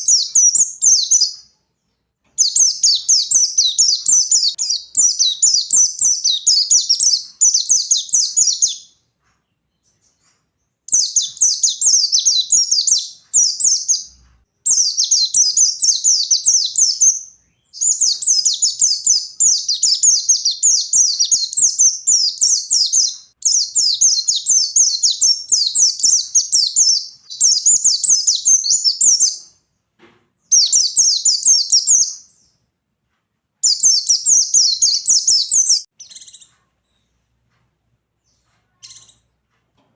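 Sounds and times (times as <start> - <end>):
bird singing rapid high chirps: 0.0 - 1.5, 2.4 - 9.0, 10.9 - 29.6, 30.5 - 32.6, 33.6 - 36.5.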